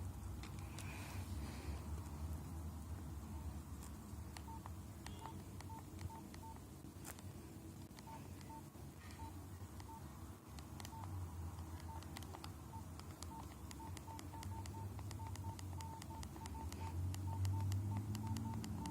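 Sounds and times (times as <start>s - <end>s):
low steady hum: 0.0s - 18.9s
phone keypad beeps: 4.4s - 6.6s, 8.0s - 10.0s, 10.6s - 11.1s, 11.7s - 18.9s.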